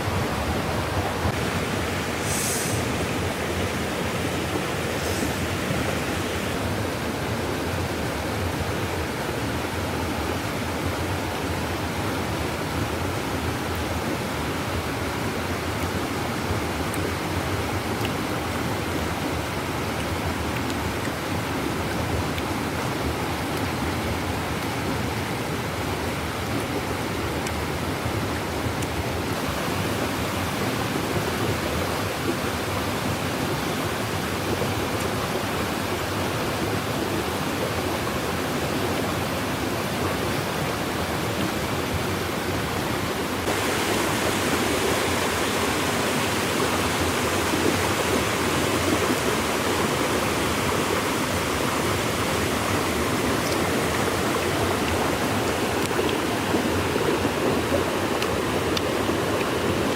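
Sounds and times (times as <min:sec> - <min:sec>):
flowing water rushing: 0:00.0 - 0:59.9.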